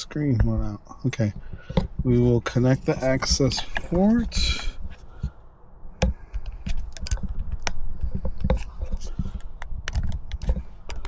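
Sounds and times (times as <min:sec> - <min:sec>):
plastic clicks and knocks: 0:06.0 - 0:11.0.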